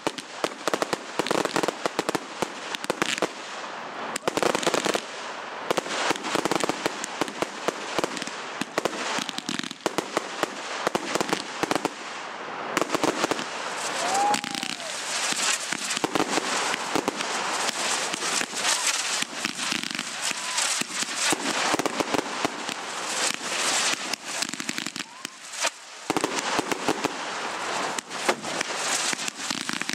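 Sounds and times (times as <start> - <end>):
fireworks crackling and banging: 0.0 - 29.9
firework whistle: 13.6 - 22.7, 23.3 - 27.0.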